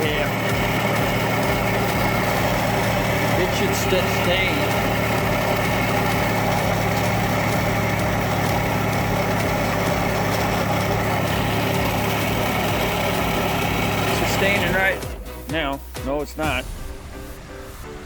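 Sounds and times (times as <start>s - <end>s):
car engine idling: 0.0s - 18.0s.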